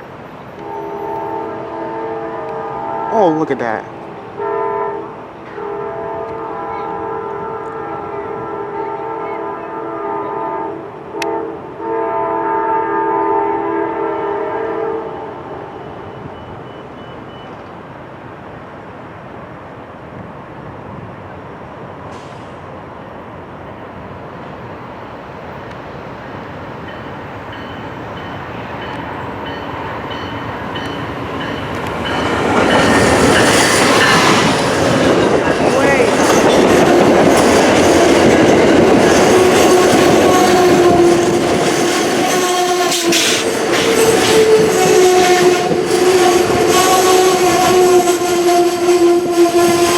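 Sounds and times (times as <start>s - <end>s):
train rumbling past: 0.0s - 49.9s
train horn blasts: 0.5s - 16.8s, 28.8s - 49.9s.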